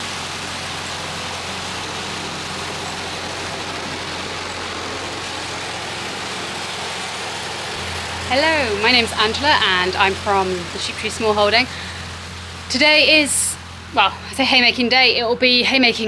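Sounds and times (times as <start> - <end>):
tractor engine running: 0.0 - 16.0.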